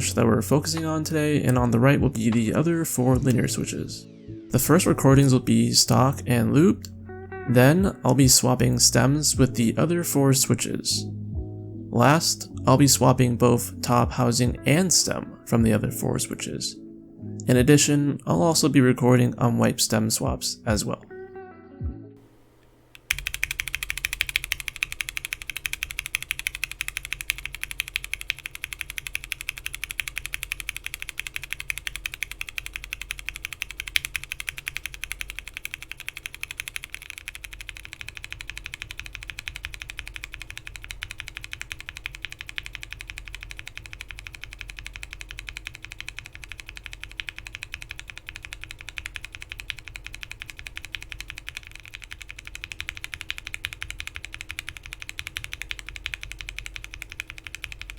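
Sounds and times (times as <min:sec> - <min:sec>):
fast mechanical keyboard typing: 0:23.0 - 0:57.9.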